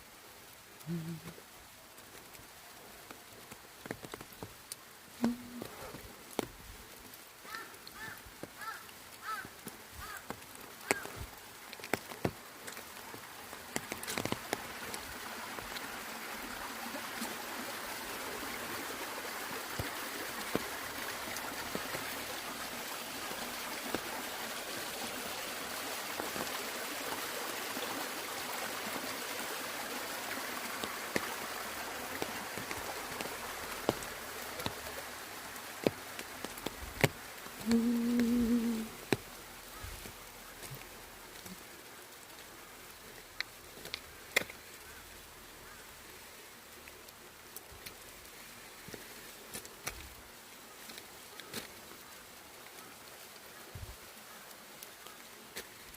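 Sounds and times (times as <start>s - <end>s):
rushing hiss of water: 0.0s - 55.9s
raindrops tapping an umbrella: 0.6s - 24.7s, 29.9s - 45.8s.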